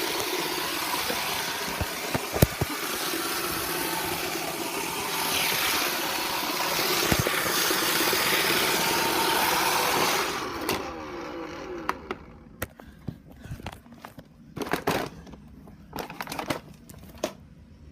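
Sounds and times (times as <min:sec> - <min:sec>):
robot vacuum running: 0:00.0 - 0:12.3.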